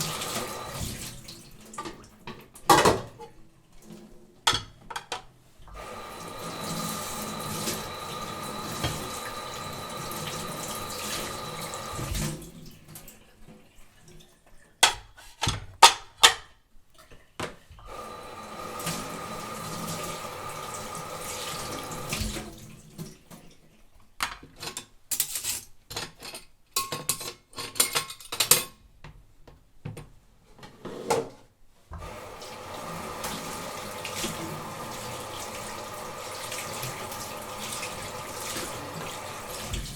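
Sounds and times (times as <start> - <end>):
tap running into sink: 0.0 - 3.1, 5.8 - 12.5, 18.5 - 22.7, 32.0 - 39.9
dishes clinking and clattering: 2.6 - 3.4, 24.3 - 28.8.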